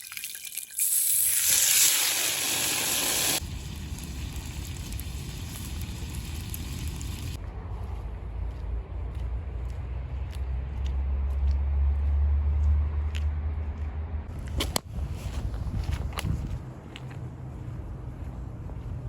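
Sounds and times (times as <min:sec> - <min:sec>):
food sizzling loudly in a pan: 0:00.6 - 0:07.4
low rumble: 0:03.4 - 0:19.0.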